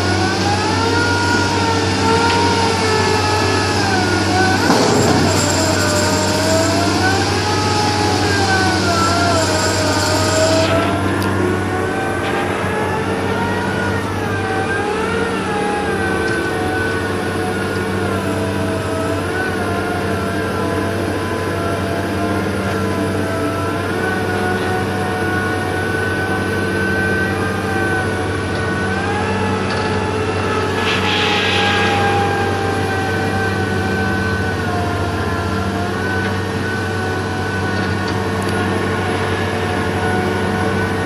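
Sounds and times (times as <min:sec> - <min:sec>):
diesel engine under load: 0:00.0 - 0:41.0
engine whine: 0:00.0 - 0:41.0
short hiss: 0:30.8 - 0:32.9.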